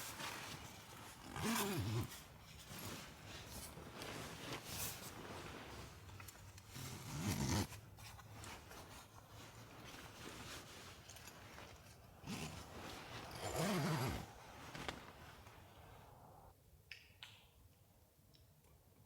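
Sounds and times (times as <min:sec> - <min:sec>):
zipper pulled: 0:00.0 - 0:08.7, 0:09.9 - 0:15.6.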